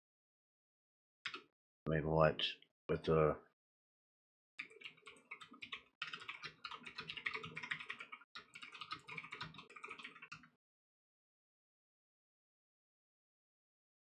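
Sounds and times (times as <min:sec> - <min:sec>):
computer keyboard typing: 0:04.6 - 0:10.5.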